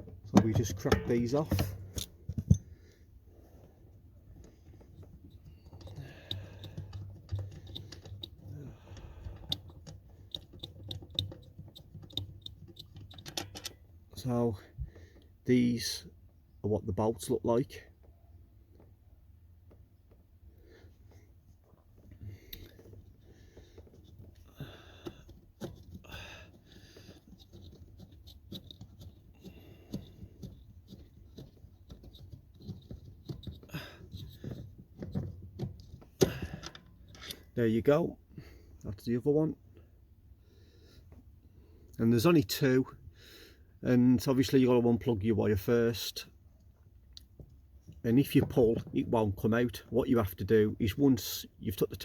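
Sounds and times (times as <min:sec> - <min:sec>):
bolts being handled: 0:00.0 - 0:02.8, 0:04.0 - 0:14.3, 0:21.6 - 0:37.6.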